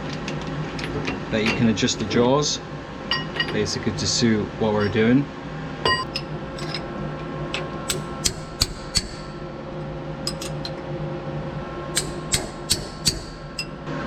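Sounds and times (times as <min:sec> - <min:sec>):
steady machine hum: 0:03.9 - 0:14.0.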